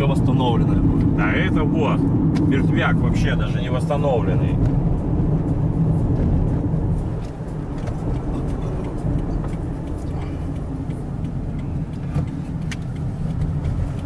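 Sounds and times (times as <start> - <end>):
car engine and road noise: 0.0 - 14.0
faint clicks: 7.2 - 14.0.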